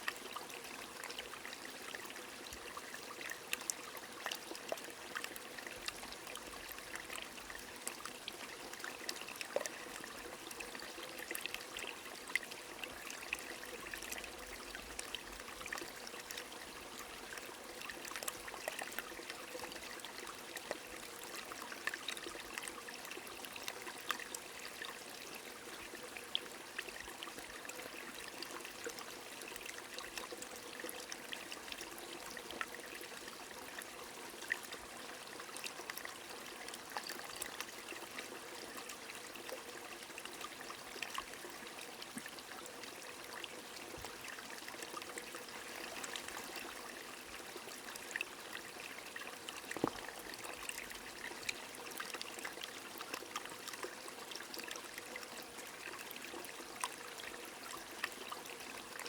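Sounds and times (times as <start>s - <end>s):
stream running water: 0.0s - 59.0s.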